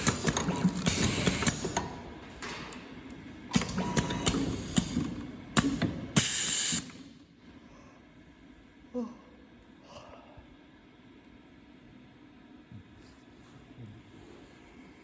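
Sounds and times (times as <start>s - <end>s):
machine clicks and clacks: 0.0s - 2.9s, 3.5s - 6.1s
pneumatic hissing bursts: 0.8s - 1.8s, 5.6s - 7.0s.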